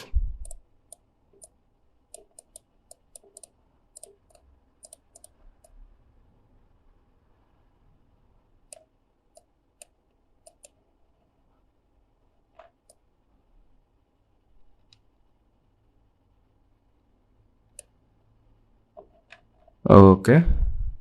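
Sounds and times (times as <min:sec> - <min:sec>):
computer mouse clicking: 0:00.0 - 0:05.8, 0:08.6 - 0:10.8, 0:12.5 - 0:13.1, 0:17.7 - 0:18.0.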